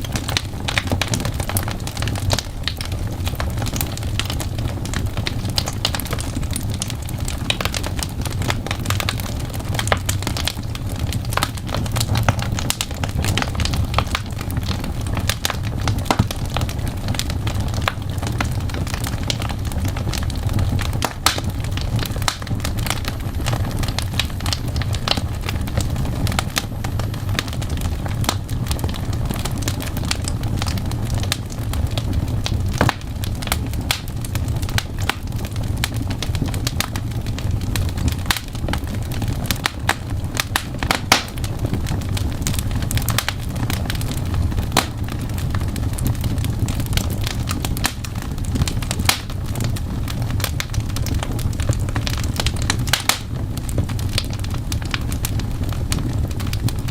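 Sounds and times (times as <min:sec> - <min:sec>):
fireplace fire crackling: 0:00.0 - 0:56.9
low rumble: 0:18.6 - 0:30.2.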